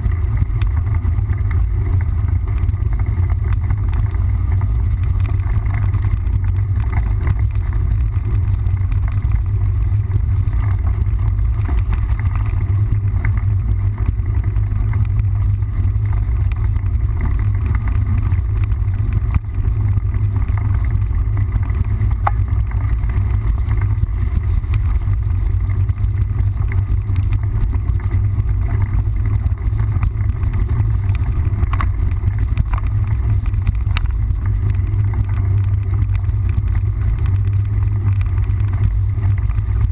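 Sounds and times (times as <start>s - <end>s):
bike tyres rolling over dirt: 0.0s - 39.9s
small clicks and rattles: 0.0s - 39.9s.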